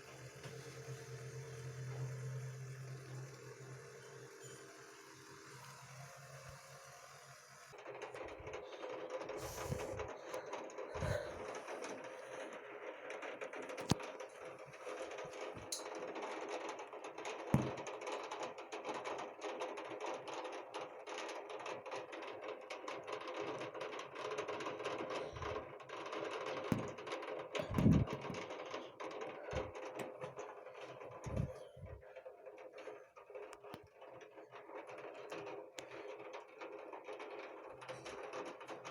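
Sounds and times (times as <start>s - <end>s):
heavy rain on hard surface: 0.0s - 8.1s.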